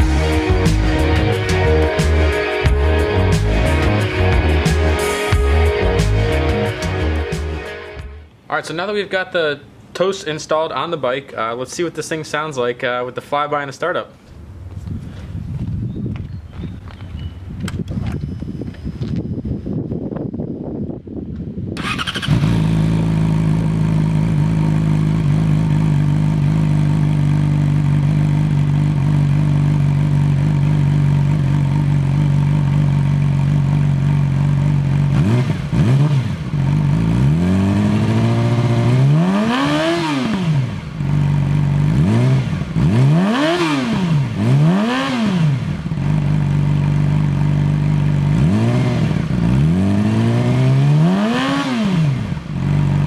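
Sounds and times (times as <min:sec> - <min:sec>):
motorcycle engine idling: 0:21.8 - 0:38.7, 0:40.8 - 0:42.0, 0:45.6 - 0:48.6, 0:52.4 - 0:53.0
engine revving in throttle blips: 0:21.8 - 0:53.0.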